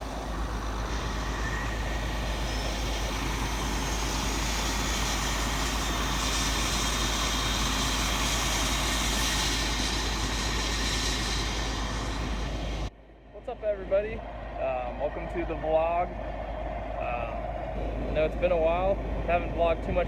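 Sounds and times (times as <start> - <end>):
forage harvester rumble: 0.0 - 12.9
faint high machine whine: 0.0 - 20.0.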